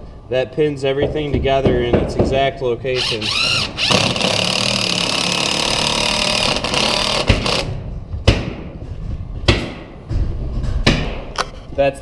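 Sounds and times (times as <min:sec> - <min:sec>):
power drill driving a screw: 0:03.0 - 0:07.7.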